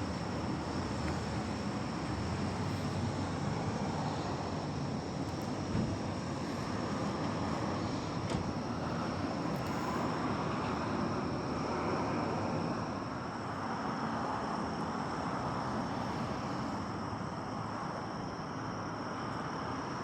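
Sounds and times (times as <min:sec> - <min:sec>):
vehicle traffic noise: 0:00.0 - 0:19.9.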